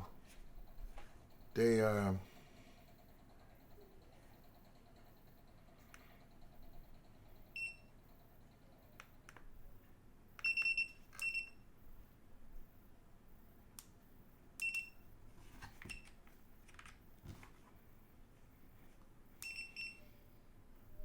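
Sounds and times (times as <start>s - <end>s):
meter short high beeps: 19.4s - 20.2s.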